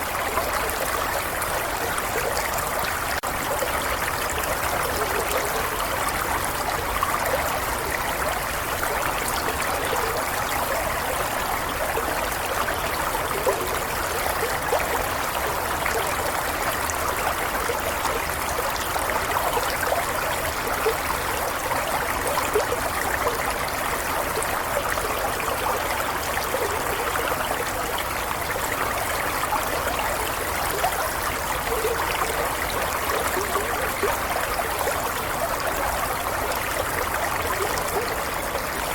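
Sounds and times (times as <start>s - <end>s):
stream water babbling: 0.0s - 38.9s.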